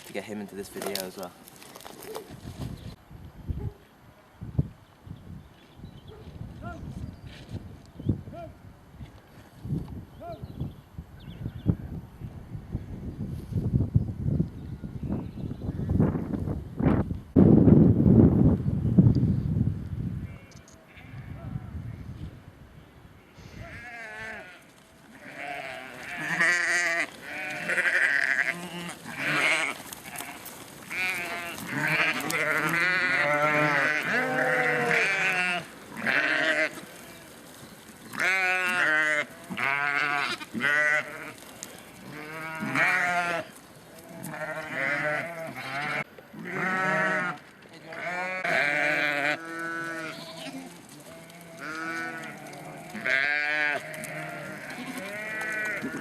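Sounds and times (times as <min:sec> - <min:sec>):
sheep and lambs bleating: 0:20.2 - 0:21.5, 0:23.5 - 0:37.4, 0:38.0 - 0:56.0.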